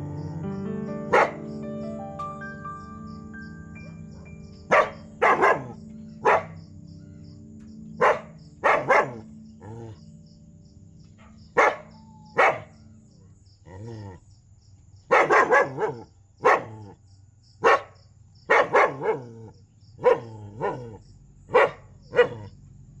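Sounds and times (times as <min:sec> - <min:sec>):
dog barking loudly: 0:01.1 - 0:01.5, 0:04.7 - 0:06.6, 0:08.0 - 0:09.3, 0:11.6 - 0:12.7, 0:15.1 - 0:17.0, 0:17.6 - 0:17.9, 0:18.5 - 0:19.4, 0:20.0 - 0:22.5.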